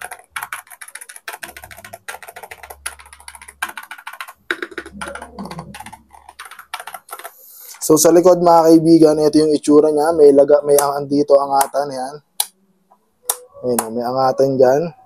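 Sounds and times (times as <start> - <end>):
mechanical keyboard typing: 0.0 - 7.9.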